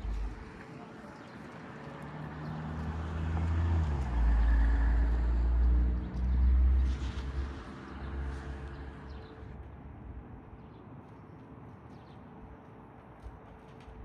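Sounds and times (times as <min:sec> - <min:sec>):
vehicle engine rumbling: 0:00.0 - 0:09.7.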